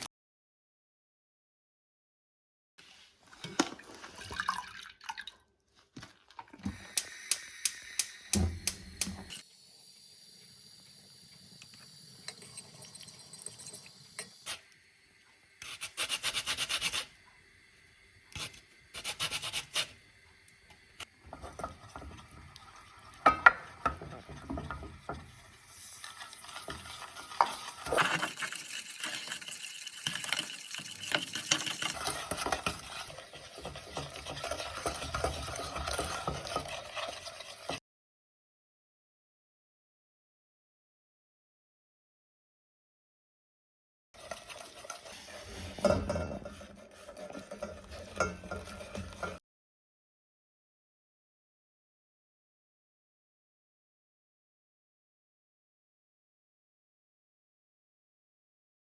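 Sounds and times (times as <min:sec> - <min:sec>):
utensil stirring in bowl: 0:15.6 - 0:17.4, 0:18.4 - 0:37.8, 0:44.2 - 0:49.4.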